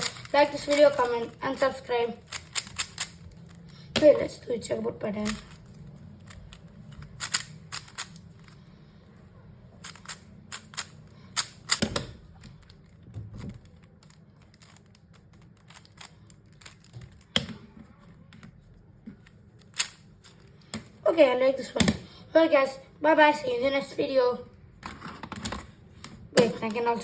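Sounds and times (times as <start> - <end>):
puzzle cube clicking turns: 0.0 - 4.2, 5.1 - 8.6, 9.8 - 17.8, 19.2 - 20.9.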